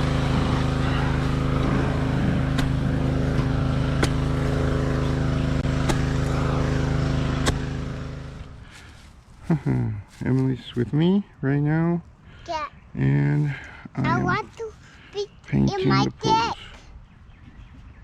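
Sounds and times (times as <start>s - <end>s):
motor running steadily: 0.0s - 9.0s.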